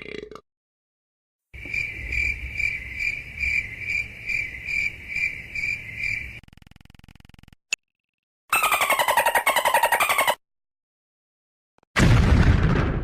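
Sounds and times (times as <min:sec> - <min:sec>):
crickets chirping: 0:01.6 - 0:06.4.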